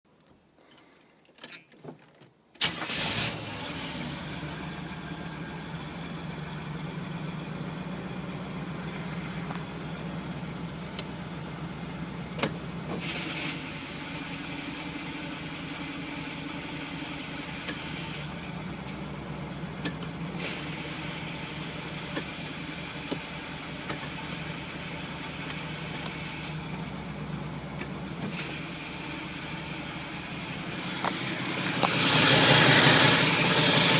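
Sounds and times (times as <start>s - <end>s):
car engine starting and idling: 2.6s - 33.9s.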